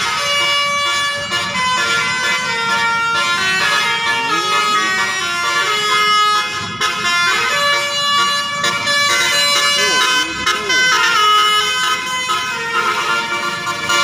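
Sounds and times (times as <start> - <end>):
multi-tone bus horn tune: 0.0 - 14.0.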